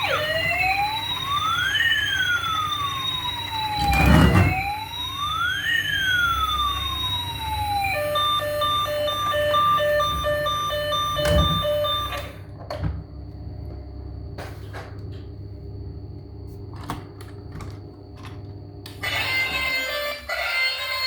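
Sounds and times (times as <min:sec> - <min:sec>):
toy electronic siren beeping: 0:00.0 - 0:12.4, 0:19.0 - 0:21.0.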